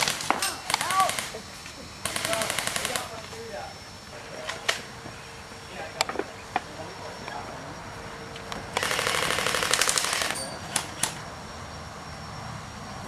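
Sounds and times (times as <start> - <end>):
airsoft gun full-auto burst: 0.0 - 1.4, 2.0 - 3.2, 8.7 - 11.2.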